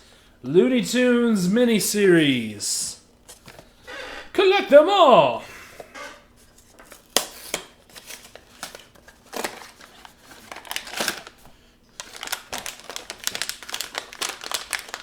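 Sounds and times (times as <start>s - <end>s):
packaging crinkling: 6.8s - 15.0s.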